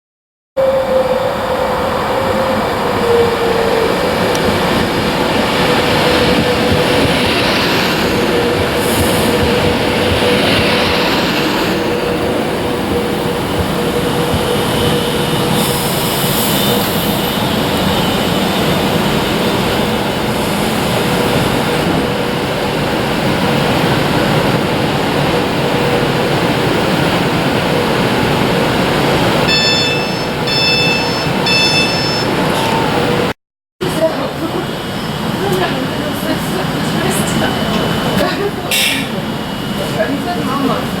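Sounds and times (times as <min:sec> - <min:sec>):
electric train rushing past: 0:00.6 - 0:41.0
short high-pitched beeps: 0:29.5 - 0:32.6.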